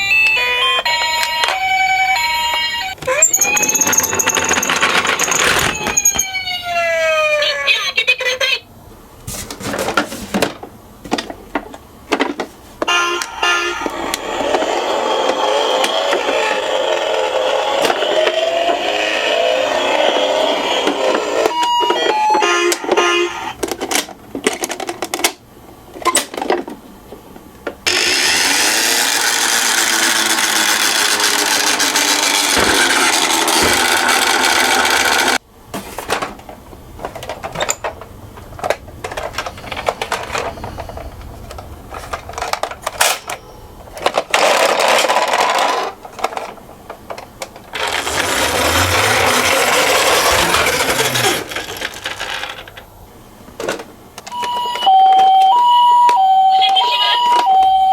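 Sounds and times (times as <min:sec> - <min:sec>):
warbling electronic siren: 0:00.0 - 0:04.6, 0:05.6 - 0:07.5, 0:12.9 - 0:14.4, 0:15.5 - 0:23.6
toy cars running: 0:00.9 - 0:07.5, 0:13.0 - 0:23.5, 0:27.9 - 0:35.4, 0:44.0 - 0:46.6, 0:47.7 - 0:52.9.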